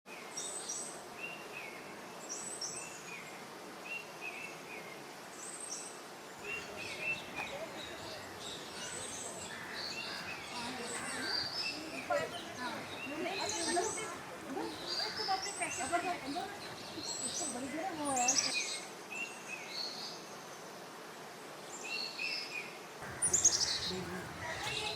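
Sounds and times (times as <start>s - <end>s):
steady background noise: 0.1s - 21.8s, 22.4s - 24.9s
birds chattering: 6.4s - 18.8s, 23.0s - 24.9s.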